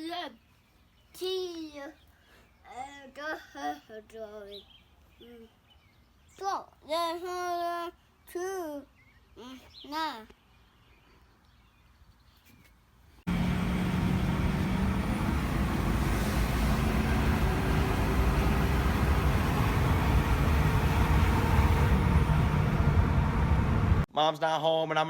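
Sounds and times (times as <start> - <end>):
road noise: 13.3 - 24.1
vehicle engine running: 13.3 - 24.1.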